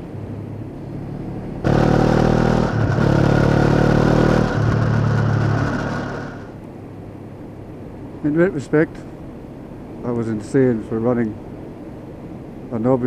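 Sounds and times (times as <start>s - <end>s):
motorcycle engine pulling away: 1.1s - 6.6s.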